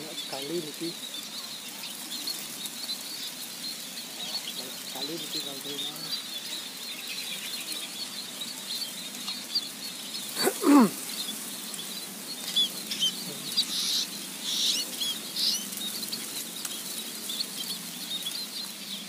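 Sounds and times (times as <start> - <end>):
small birds chirping: 0.0 - 19.0.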